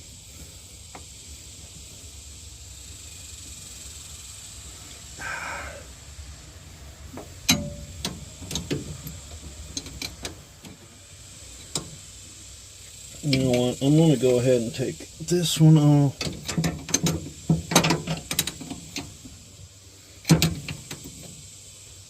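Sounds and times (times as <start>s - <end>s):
faint steady hiss: 0.0s - 22.0s
sharp clicks and knocks: 7.1s - 10.9s, 11.6s - 12.0s, 16.2s - 19.3s, 20.2s - 21.4s.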